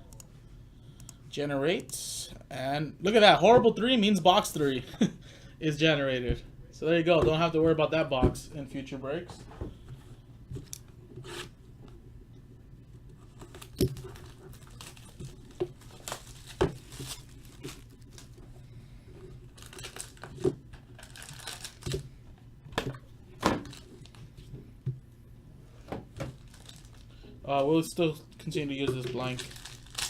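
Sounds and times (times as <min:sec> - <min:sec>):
wrapping tearing and crinkling: 0:13.3 - 0:18.4, 0:19.4 - 0:22.0, 0:26.3 - 0:27.2, 0:29.0 - 0:30.0.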